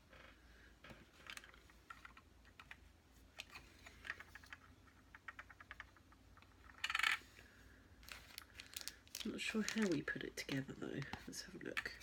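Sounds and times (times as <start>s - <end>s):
small plastic pieces clicking: 3.4s - 7.2s.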